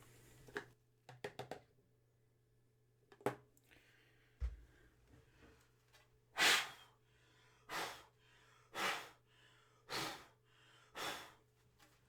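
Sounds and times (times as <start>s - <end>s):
sharp puffs of breath: 6.4s - 11.5s.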